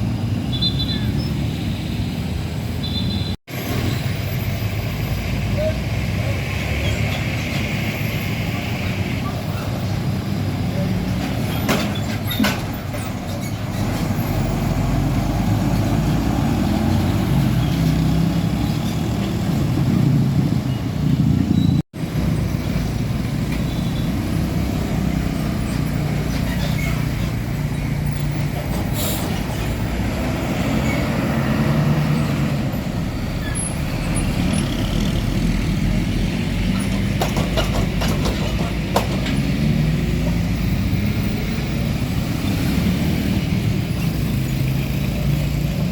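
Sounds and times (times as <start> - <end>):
diesel truck engines rumbling: 0.0 - 45.9
tyre and traffic noise: 0.0 - 45.9.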